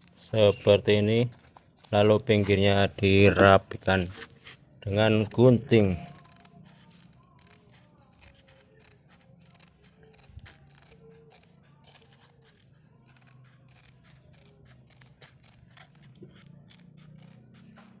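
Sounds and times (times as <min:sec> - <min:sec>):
scissors snipping: 0:06.0 - 0:18.0.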